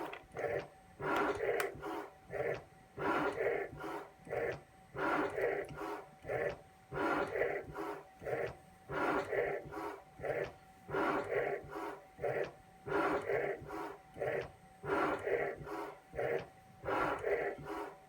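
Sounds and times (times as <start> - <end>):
milling machine scraping cable: 0.0 - 18.0.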